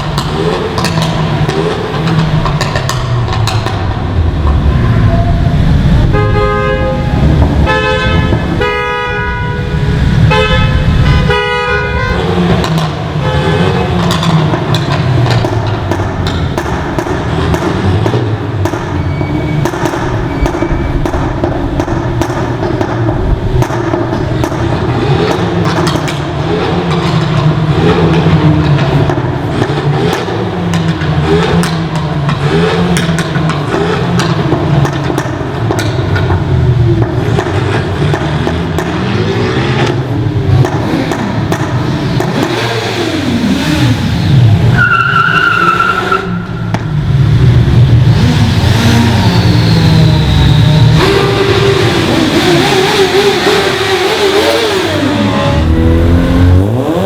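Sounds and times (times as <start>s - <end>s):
car engines revving past: 0.0s - 57.0s
car horn two-note toots: 6.0s - 12.4s.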